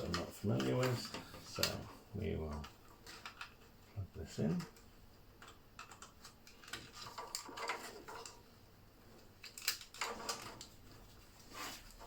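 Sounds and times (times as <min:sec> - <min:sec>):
plastic connectors clicking and scraping: 0:00.0 - 0:03.7, 0:04.4 - 0:08.4, 0:09.2 - 0:10.8.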